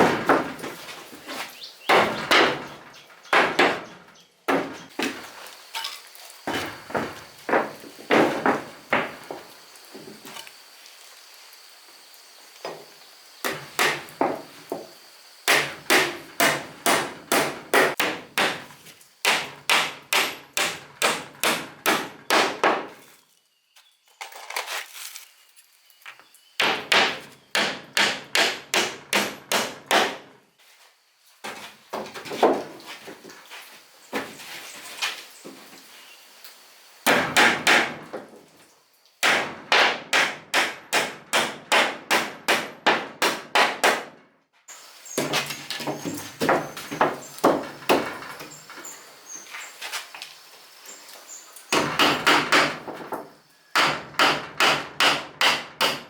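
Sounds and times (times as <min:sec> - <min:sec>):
hammer striking wood: 0:13.4 - 0:14.9, 0:15.5 - 0:18.6, 0:19.2 - 0:22.9, 0:26.6 - 0:30.2, 0:37.1 - 0:38.0, 0:39.2 - 0:44.2, 0:51.7 - 0:56.0.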